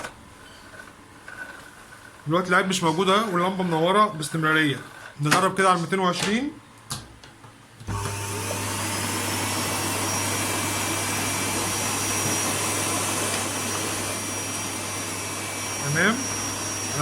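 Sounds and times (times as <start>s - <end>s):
vacuum cleaner motor hum and whine: 7.8s - 17.0s.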